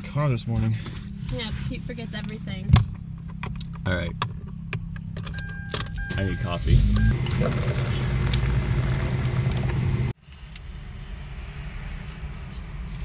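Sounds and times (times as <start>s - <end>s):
car engine hum inside cabin: 1.3s - 10.2s.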